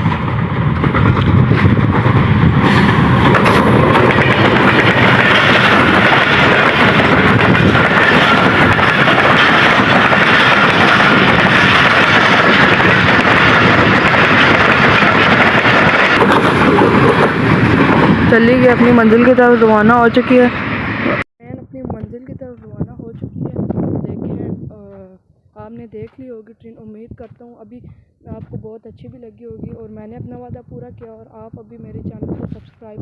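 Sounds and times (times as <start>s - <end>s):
train passing on track: 0.0s - 24.9s.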